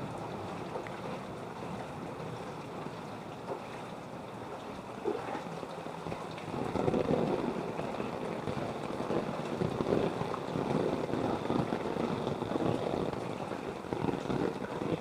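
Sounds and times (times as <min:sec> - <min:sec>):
water sloshing and splashing: 0:00.0 - 0:15.0.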